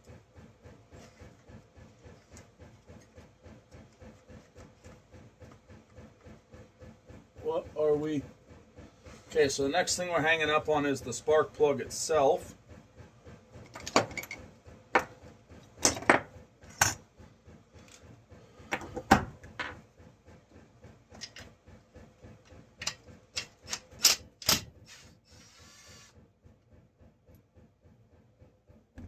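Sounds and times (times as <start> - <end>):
short rasp: 24.8 - 26.2.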